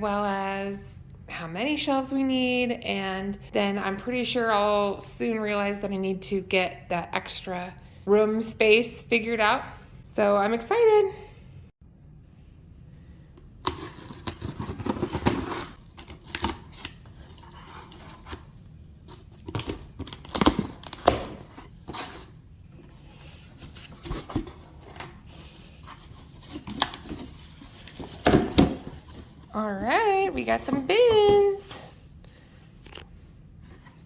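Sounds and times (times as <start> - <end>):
packing tape tearing: 13.6 - 18.4
cardboard rustling and scraping: 13.6 - 34.0.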